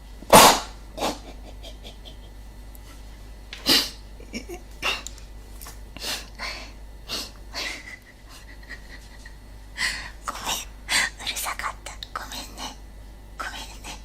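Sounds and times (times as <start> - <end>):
person sniffing and breathing: 3.6 - 4.0, 6.0 - 7.8.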